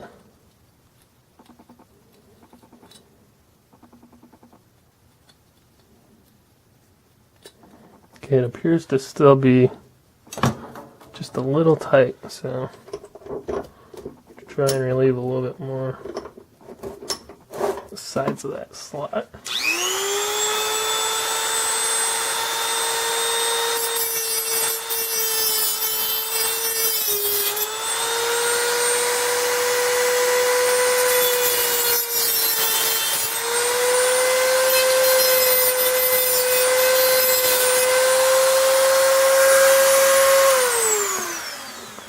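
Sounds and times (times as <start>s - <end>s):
rotary tool whining: 19.5s - 42.0s.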